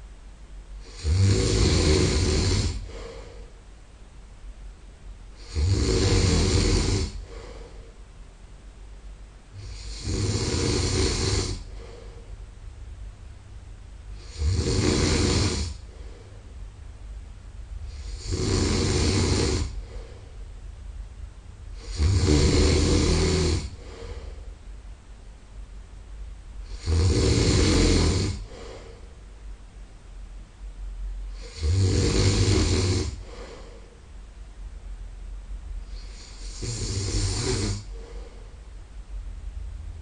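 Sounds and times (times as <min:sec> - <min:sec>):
quiet breathing: 0:00.0 - 0:04.0, 0:05.1 - 0:13.0, 0:13.9 - 0:25.4, 0:26.6 - 0:29.6, 0:30.9 - 0:34.4, 0:35.3 - 0:40.0
man snoring: 0:00.8 - 0:03.4, 0:05.4 - 0:07.7, 0:09.6 - 0:12.2, 0:14.2 - 0:16.3, 0:17.9 - 0:20.2, 0:21.7 - 0:24.4, 0:26.6 - 0:29.0, 0:31.3 - 0:33.8, 0:35.9 - 0:38.3.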